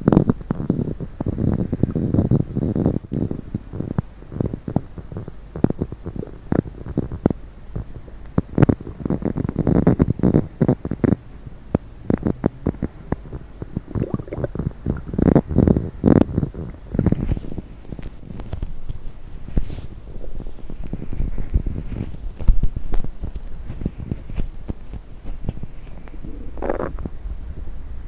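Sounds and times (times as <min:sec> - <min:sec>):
stomach gurgling: 0:13.6 - 0:17.3, 0:25.5 - 0:27.1.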